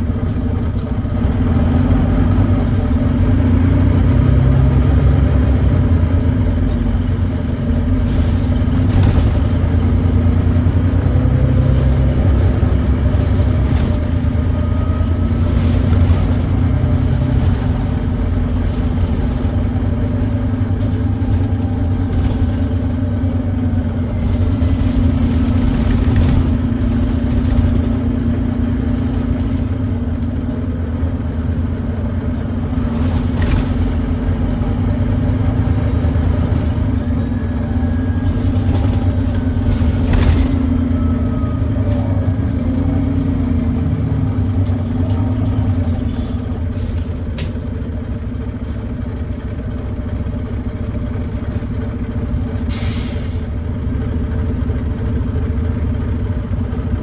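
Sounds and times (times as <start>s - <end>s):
bus diesel engine driving: 0.0s - 57.0s
knocks and rattles: 5.0s - 30.5s, 32.5s - 47.8s.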